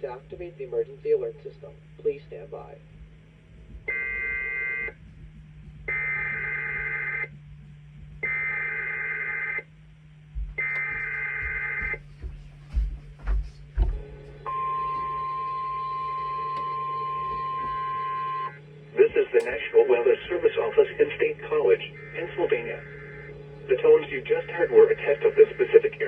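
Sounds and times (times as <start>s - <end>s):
low radio hum: 0.0s - 26.0s
low thumps: 2.8s - 8.5s, 10.1s - 19.2s
warning alarm tone: 3.9s - 5.0s, 5.9s - 7.4s, 8.2s - 9.7s, 10.6s - 12.1s, 13.8s - 26.0s
buzzy data bursts: 13.7s - 26.0s.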